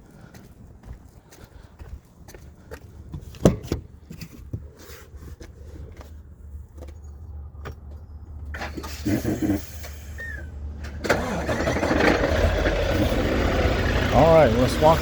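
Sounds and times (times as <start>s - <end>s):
footsteps: 0.2s - 7.0s.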